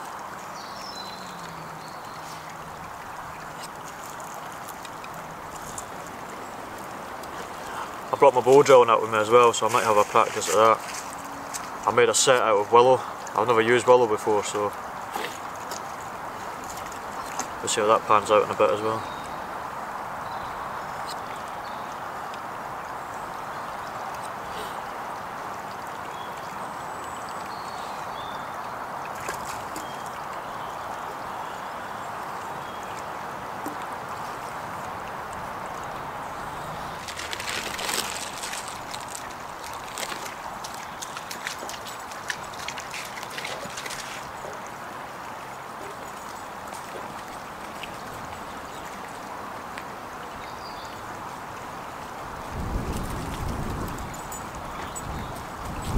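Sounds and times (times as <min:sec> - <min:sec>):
stream flowing: 0:00.0 - 0:55.9.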